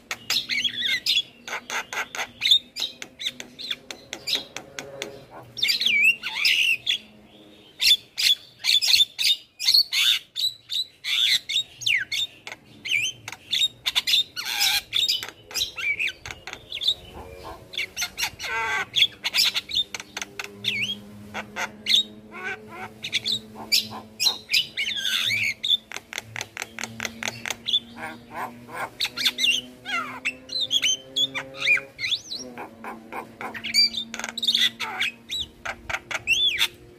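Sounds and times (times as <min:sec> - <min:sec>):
myna calling with squawks and whistles: 0:07.7 - 0:26.0.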